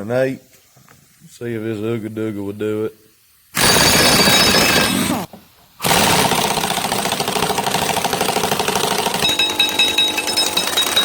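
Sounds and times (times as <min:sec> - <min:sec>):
impact wrench hammering: 0:03.6 - 0:05.1, 0:05.8 - 0:11.0.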